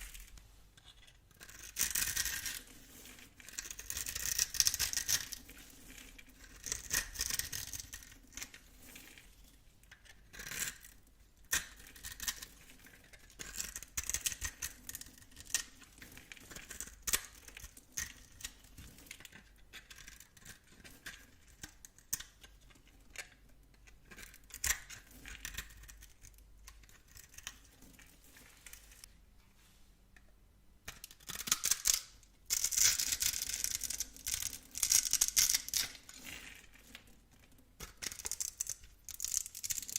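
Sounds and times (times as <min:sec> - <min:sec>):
knife cutting soap: 0:00.0 - 0:28.9, 0:37.8 - 0:39.9.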